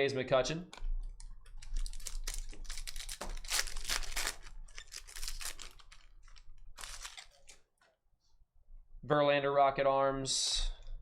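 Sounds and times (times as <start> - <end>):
trading cards rustling and clicking: 1.1 - 7.7.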